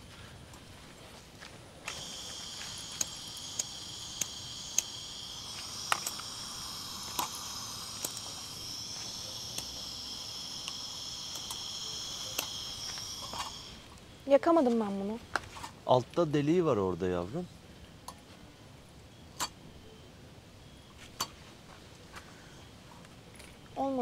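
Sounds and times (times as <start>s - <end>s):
crickets chirring: 0.0s - 24.0s.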